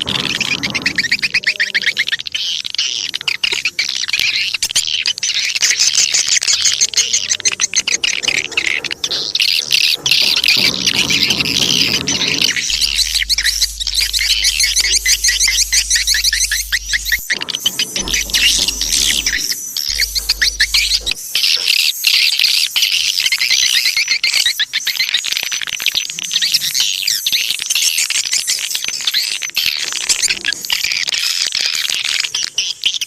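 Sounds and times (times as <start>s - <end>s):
swiftlets twittering: 0.0s - 21.5s.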